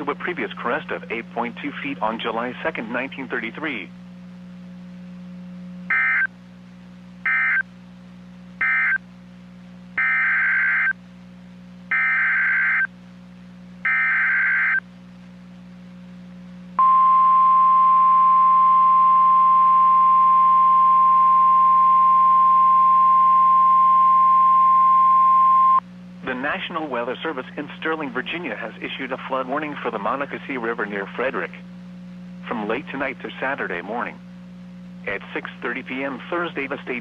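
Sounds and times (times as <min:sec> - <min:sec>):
low radio hum: 0:00.0 - 0:37.0
steady warning alarm tone: 0:05.9 - 0:06.3, 0:07.2 - 0:07.6, 0:08.6 - 0:09.0, 0:10.0 - 0:11.0, 0:11.9 - 0:12.9, 0:13.8 - 0:14.8
screeching digital data bursts: 0:10.0 - 0:10.9, 0:11.9 - 0:12.9, 0:13.9 - 0:14.8.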